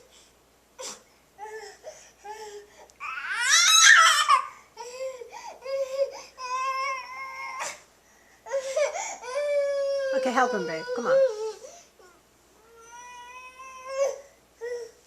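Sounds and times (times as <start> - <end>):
baby crying: 0.8 - 7.8, 8.5 - 15.0.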